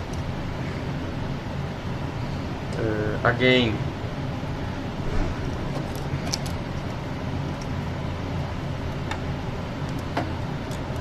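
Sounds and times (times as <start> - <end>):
low background hum: 0.0 - 11.0
faint clicks of metal parts: 5.5 - 7.8.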